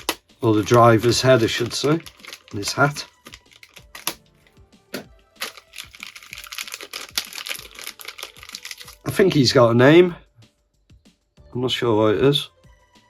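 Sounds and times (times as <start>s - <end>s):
plastic bag crinkling: 0.0s - 4.2s, 5.4s - 9.4s
plastic parts clicking and tapping: 0.0s - 4.3s, 5.4s - 9.1s.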